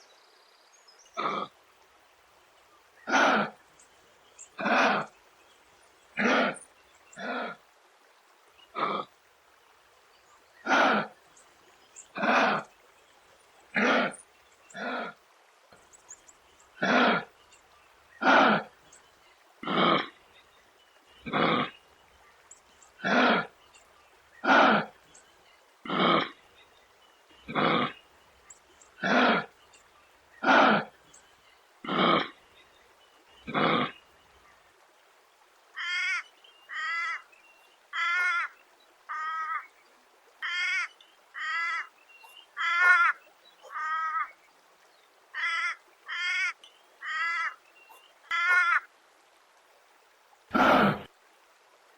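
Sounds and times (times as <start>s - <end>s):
kangaroo harsh rasping calls: 3.1s - 3.6s, 16.8s - 17.3s, 18.2s - 18.7s, 23.0s - 23.5s, 24.4s - 24.9s, 27.4s - 28.0s, 29.0s - 29.5s, 30.4s - 30.9s, 37.9s - 38.5s, 42.6s - 44.3s, 45.4s - 47.6s, 48.3s - 48.8s.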